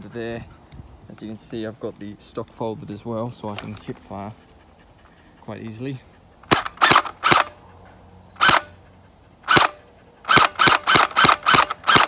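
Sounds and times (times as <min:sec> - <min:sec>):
gel blaster shots: 0:06.4 - 0:07.5, 0:09.4 - 0:12.0.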